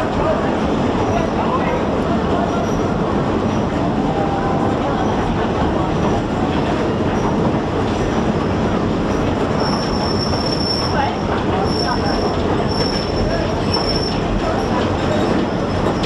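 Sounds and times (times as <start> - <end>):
train rumbling along track: 0.0 - 16.0
wheels squealing on rails: 1.0 - 5.4, 9.1 - 16.0.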